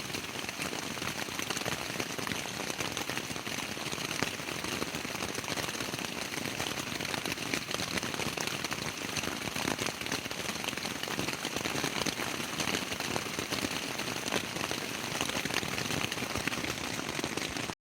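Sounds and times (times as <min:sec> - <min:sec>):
rain pattering on a tent: 0:00.0 - 0:17.8.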